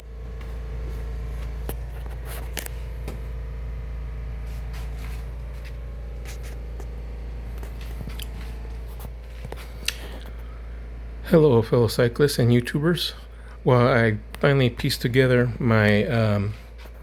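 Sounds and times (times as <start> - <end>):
low room hum: 0.0 - 17.0
faint clicks and handling noises: 1.4 - 3.4.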